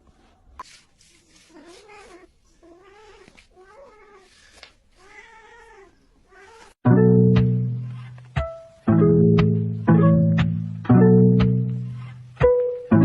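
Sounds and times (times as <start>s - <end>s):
cat yowling: 5.0s - 6.8s.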